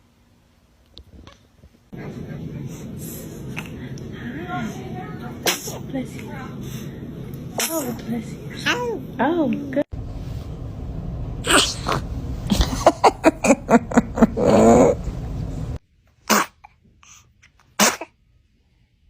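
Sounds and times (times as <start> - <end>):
baby sneezing: 5.4 - 5.8, 11.5 - 12.0, 16.3 - 16.8, 17.8 - 18.2.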